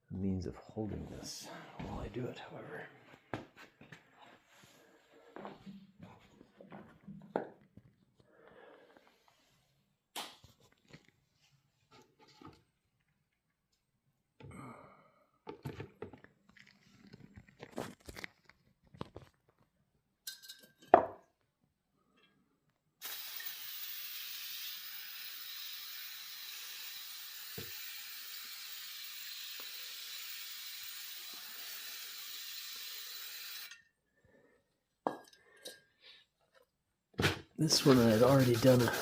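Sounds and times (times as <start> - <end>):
aerosol can spraying: 23.0 - 33.7, 37.6 - 39.0.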